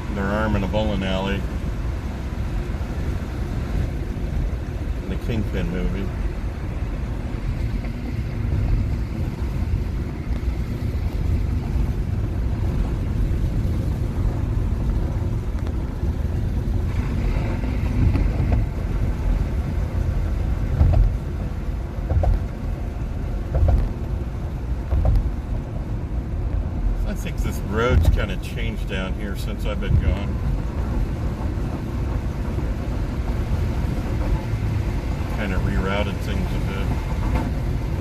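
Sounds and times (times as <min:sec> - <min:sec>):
road and tyre noise in car cabin: 0:00.0 - 0:38.0
low thumps: 0:20.5 - 0:21.4, 0:22.0 - 0:25.6.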